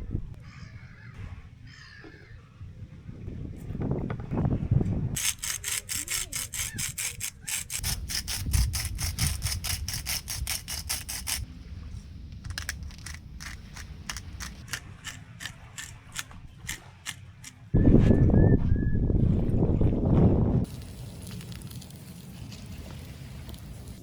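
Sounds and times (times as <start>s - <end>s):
steady low rumble: 0.0s - 0.4s
grinding scraping strokes: 5.2s - 11.4s.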